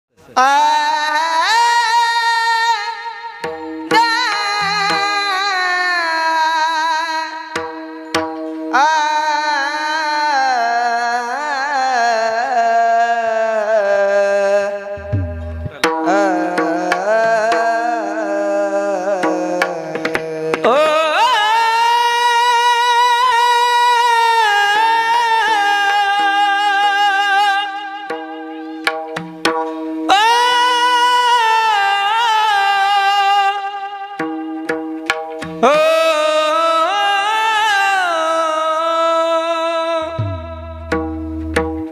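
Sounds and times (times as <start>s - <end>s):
high voice singing devotional song: 0.2s - 8.1s, 8.7s - 28.9s, 30.1s - 34.7s, 35.6s - 40.9s
drum strokes: 3.2s - 5.6s, 15.0s - 18.3s, 18.9s - 20.9s, 28.0s - 30.8s, 40.0s - 41.9s.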